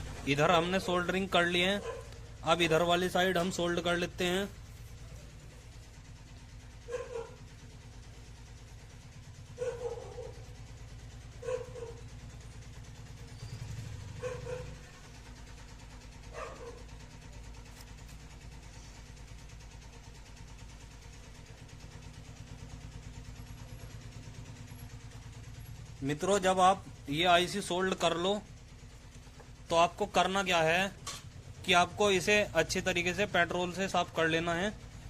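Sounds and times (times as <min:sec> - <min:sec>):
steady low hum: 0:00.0 - 0:35.0
dog barking: 0:01.6 - 0:02.8, 0:06.8 - 0:07.5, 0:09.5 - 0:10.6, 0:11.4 - 0:12.1, 0:14.2 - 0:15.0, 0:16.3 - 0:17.0.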